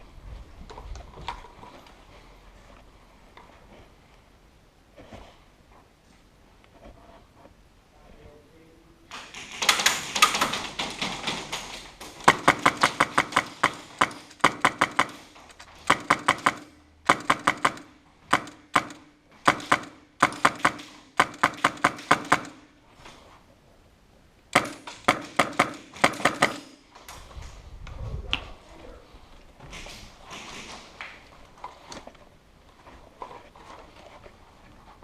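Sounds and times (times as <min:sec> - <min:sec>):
airsoft gun rapid shots: 0:09.3 - 0:22.6, 0:24.6 - 0:26.8.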